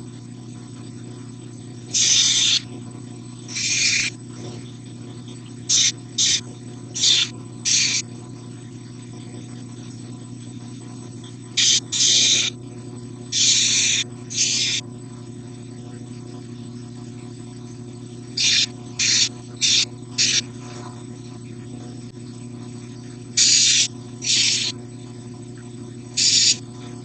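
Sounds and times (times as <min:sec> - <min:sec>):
belt grinder humming: 0:01.9 - 0:02.6, 0:05.7 - 0:06.4, 0:07.0 - 0:08.0, 0:11.6 - 0:12.5, 0:13.4 - 0:14.8, 0:18.4 - 0:20.4, 0:23.4 - 0:24.7, 0:26.2 - 0:26.6.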